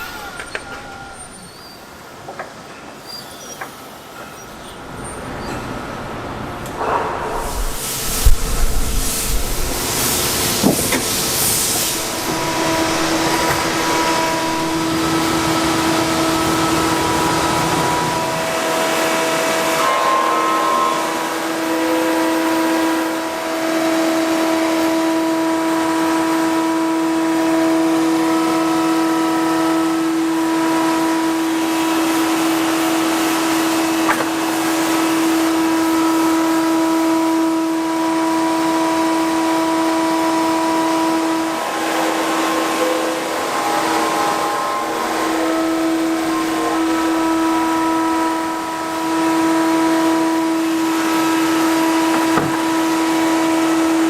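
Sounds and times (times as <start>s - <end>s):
woodworking machine whine: 0.0s - 2.4s, 4.7s - 54.0s
low rumble: 7.3s - 10.0s
noisy hiss: 7.3s - 19.4s.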